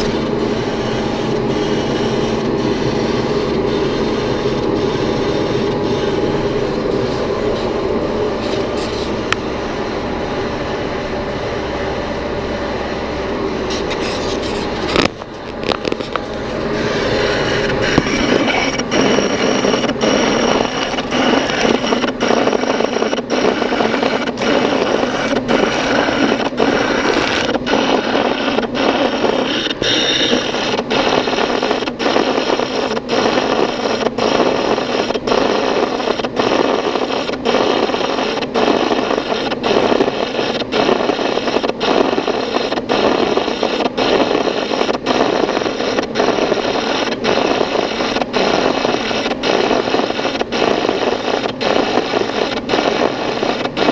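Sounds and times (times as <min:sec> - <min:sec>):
boring tool grinding metal: 0:13.7 - 0:41.2.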